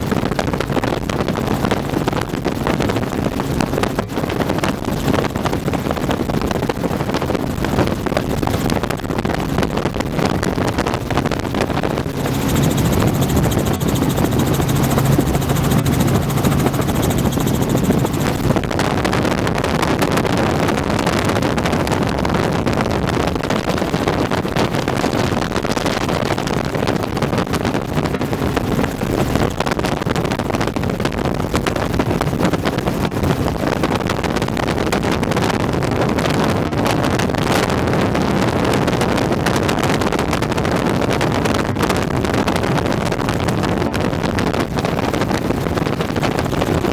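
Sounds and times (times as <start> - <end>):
helicopter rotor and engine: 0.0 - 19.1, 23.5 - 34.8, 44.7 - 46.9
humming tone: 11.8 - 18.8.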